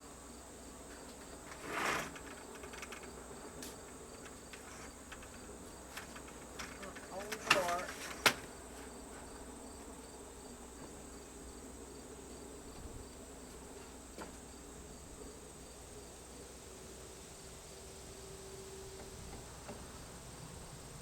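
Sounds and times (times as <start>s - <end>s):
steady low hiss: 0.0s - 21.0s
cricket chirping: 0.2s - 13.6s.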